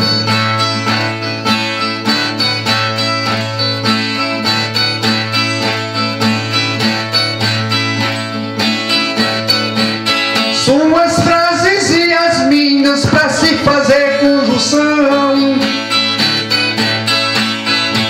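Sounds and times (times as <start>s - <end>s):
steady low guitar note: 0.0s - 4.0s
plucked guitar notes: 0.0s - 18.0s.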